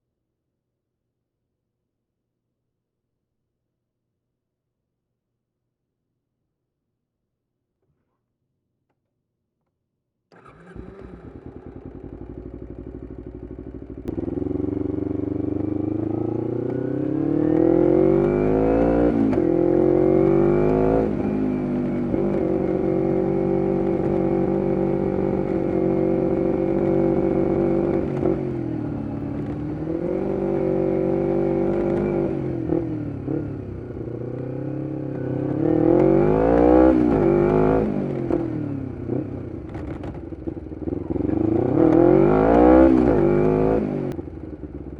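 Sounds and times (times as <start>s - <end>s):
motorcycle engine revving: 10.3s - 44.9s.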